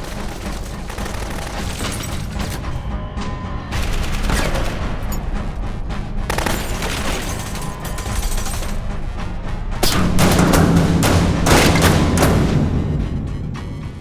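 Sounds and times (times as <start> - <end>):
rapid gunfire: 0.0 - 2.9, 3.7 - 5.6, 6.3 - 8.7, 9.8 - 13.0.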